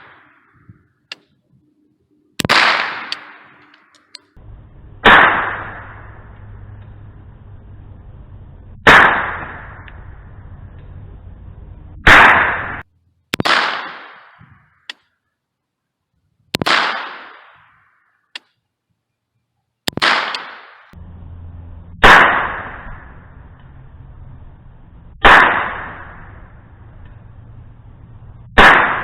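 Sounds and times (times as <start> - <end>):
gunshots with echo: 2.4 - 3.6, 5.0 - 6.3, 8.8 - 9.9, 12.0 - 12.8, 13.4 - 14.5, 16.6 - 17.8, 19.9 - 21.0, 22.0 - 23.2, 25.2 - 26.6, 28.6 - 29.0.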